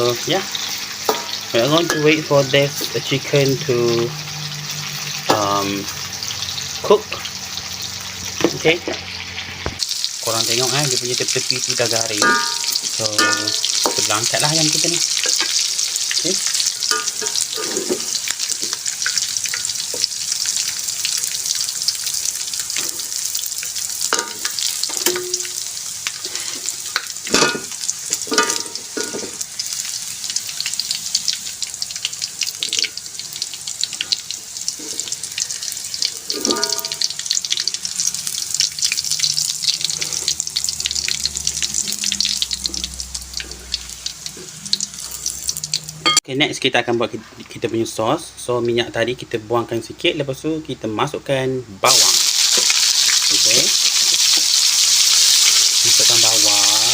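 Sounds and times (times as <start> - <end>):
chicken sizzling in hot oil: 0.0 - 46.2, 51.8 - 56.9
utensil clinking against wok: 1.1 - 2.1, 12.1 - 14.1, 16.9 - 17.9, 24.1 - 25.5, 27.3 - 29.3, 36.3 - 37.1.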